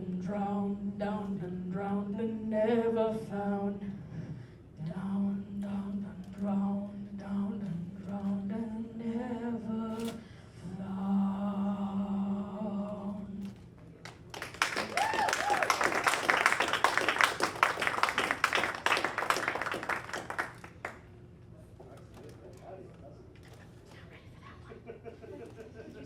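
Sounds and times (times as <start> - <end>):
audience applause: 14.3 - 21.0
person whooping: 14.8 - 16.2.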